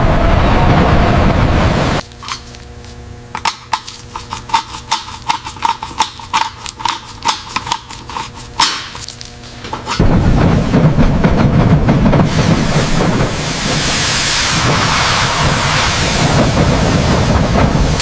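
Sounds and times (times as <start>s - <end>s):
loud hissing rush: 9.4s - 18.0s.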